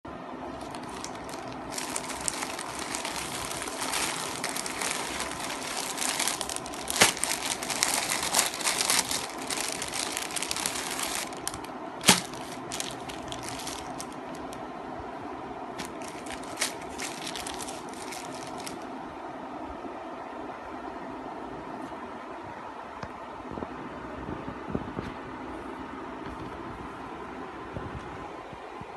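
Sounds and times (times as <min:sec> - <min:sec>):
sharp cracks of packaging: 0:00.6 - 0:14.2, 0:15.8 - 0:18.8
packaging crinkling and tearing: 0:00.6 - 0:14.6, 0:15.8 - 0:18.8.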